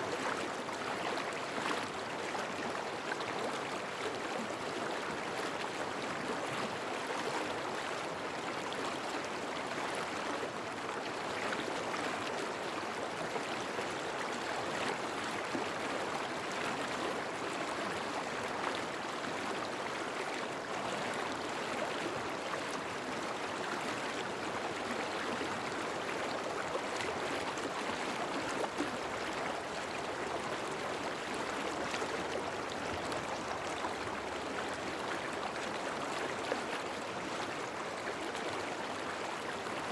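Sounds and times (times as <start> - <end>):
stream running water: 0.0 - 39.9.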